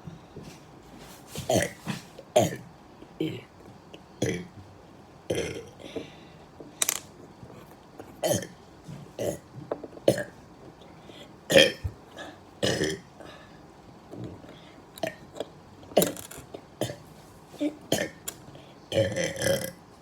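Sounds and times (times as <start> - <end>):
person burping: 12.6 - 13.1, 18.9 - 19.8.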